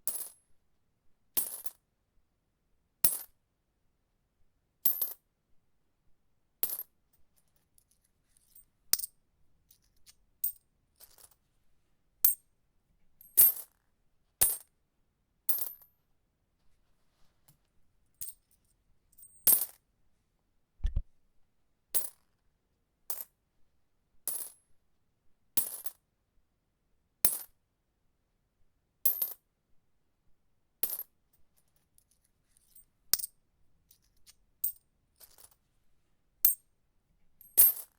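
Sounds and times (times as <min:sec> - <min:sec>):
dull low thump: 0:20.8 - 0:21.0
coins clinking on hard surface: 0:32.0 - 0:33.3, 0:33.9 - 0:35.6, 0:37.4 - 0:37.9.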